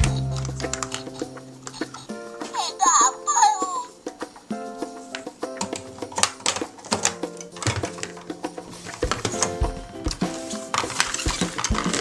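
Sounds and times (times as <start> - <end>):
simple background tune: 0.0 - 12.0
plastic toys clicking and tapping: 5.1 - 9.5, 10.7 - 12.0.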